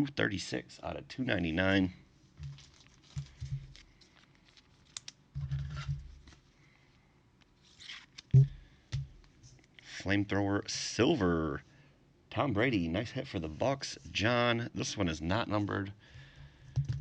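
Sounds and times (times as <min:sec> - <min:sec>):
cards rustling and clicking: 0:02.4 - 0:06.5.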